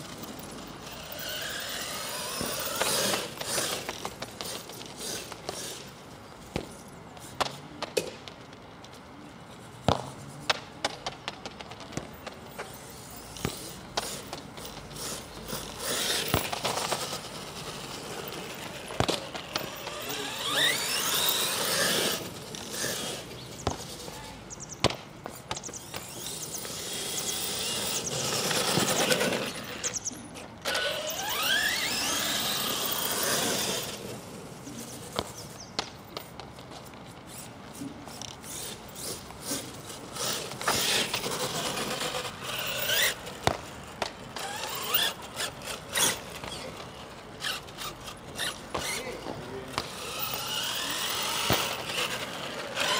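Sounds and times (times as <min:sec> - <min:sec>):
electric motor whining: 0:00.0 - 0:06.0, 0:13.3 - 0:24.1, 0:30.6 - 0:35.5, 0:38.1 - 0:52.9
tyre and drivetrain noise: 0:00.0 - 0:52.9.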